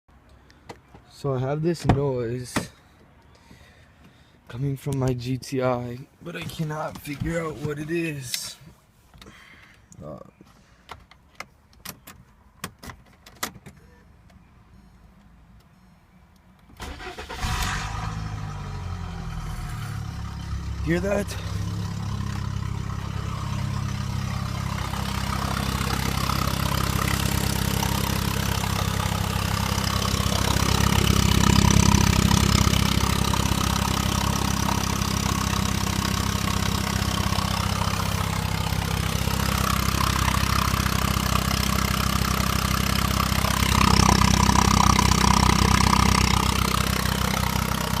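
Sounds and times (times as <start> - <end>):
car engine idling with odd noise: 17.0 - 48.0.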